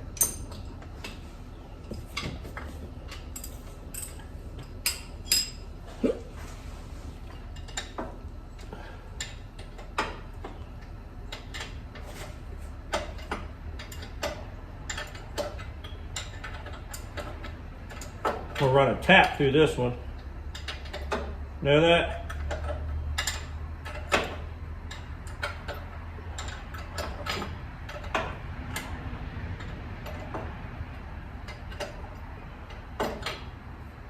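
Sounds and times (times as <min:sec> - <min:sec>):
steady low hum: 0:00.0 - 0:34.0
hand tools clinking on metal: 0:00.1 - 0:00.7, 0:02.2 - 0:05.6.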